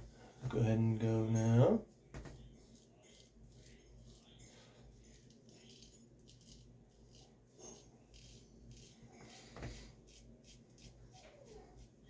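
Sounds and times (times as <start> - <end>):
razor scraping stubble: 2.4 - 12.0.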